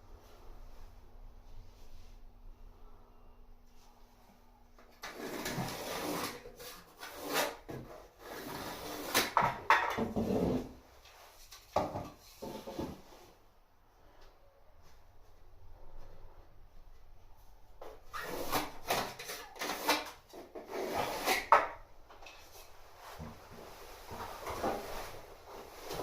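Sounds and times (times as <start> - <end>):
scraping and handling noises: 17.7 - 26.0.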